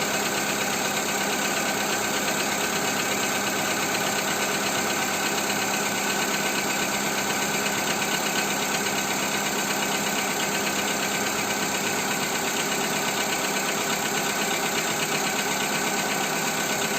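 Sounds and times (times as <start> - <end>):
car engine idling: 0.0 - 16.9
rapid engine knocking: 0.0 - 16.9.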